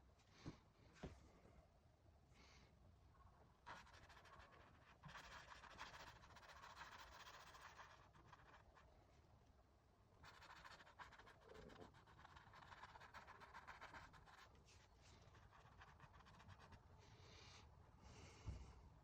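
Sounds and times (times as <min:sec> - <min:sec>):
paintbrush scratching on canvas: 0:03.6 - 0:08.9, 0:10.2 - 0:16.9.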